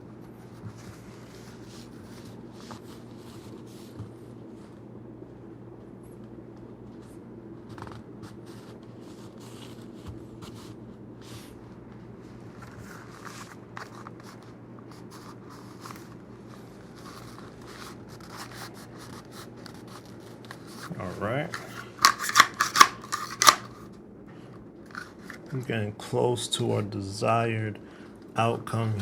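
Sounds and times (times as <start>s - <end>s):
steady low hum: 0.0s - 29.0s
plastic holster scraping and clicking: 21.5s - 23.7s.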